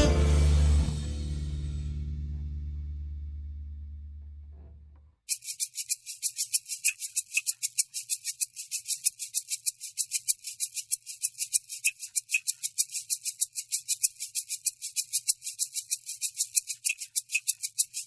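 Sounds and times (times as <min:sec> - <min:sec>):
shaker rhythm: 0:05.3 - 0:18.0.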